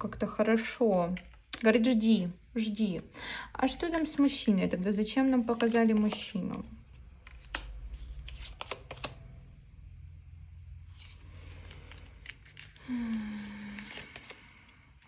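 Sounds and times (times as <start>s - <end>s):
cards clicking and snapping: 7.1s - 9.3s, 13.5s - 14.7s.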